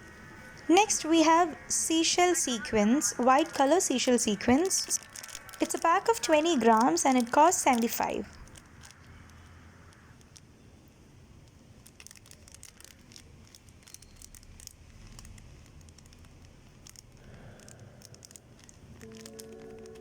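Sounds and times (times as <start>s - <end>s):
plastic packet crinkling: 0.0s - 10.6s, 11.3s - 20.0s.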